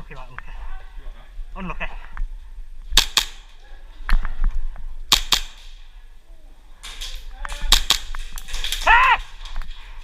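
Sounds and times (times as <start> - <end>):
airsoft guns firing: 2.9 - 3.6, 5.1 - 5.9, 6.8 - 9.8.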